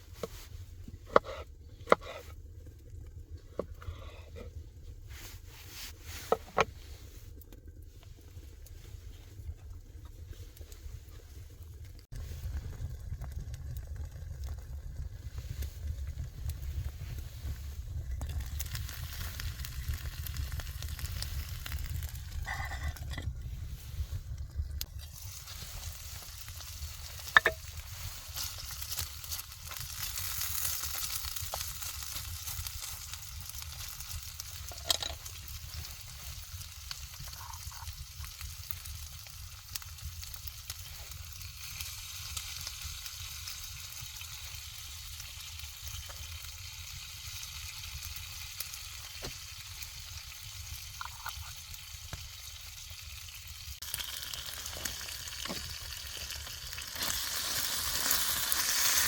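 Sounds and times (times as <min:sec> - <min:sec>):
food sizzling in a pan: 0:16.6 - 0:59.0.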